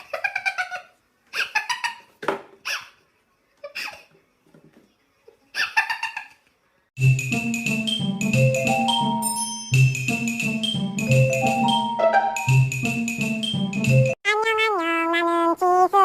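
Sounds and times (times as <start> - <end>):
mallet percussion music: 7.0 - 14.2.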